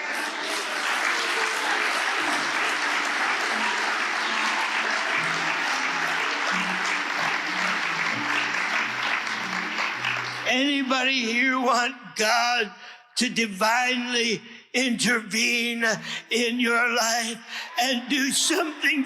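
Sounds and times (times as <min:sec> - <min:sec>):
audience applauding: 0:00.0 - 0:10.9, 0:17.9 - 0:19.0.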